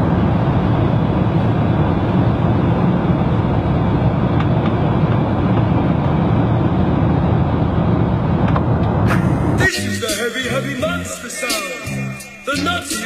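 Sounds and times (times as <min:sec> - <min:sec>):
airliner cabin roar: 0:00.0 - 0:13.0.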